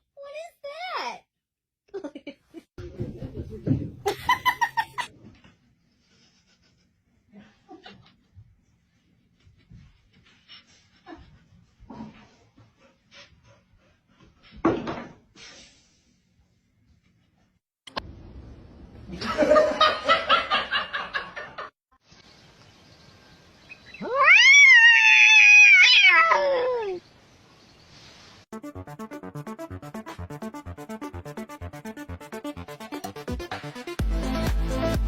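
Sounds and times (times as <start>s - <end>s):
cat meowing: 24.0s - 27.0s.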